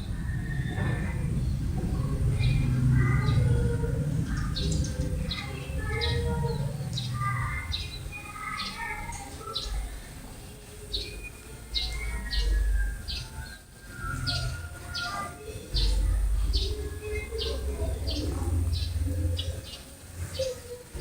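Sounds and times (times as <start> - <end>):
low rumble: 0.0 - 8.1, 15.7 - 20.3
small bird chirping: 0.0 - 21.0.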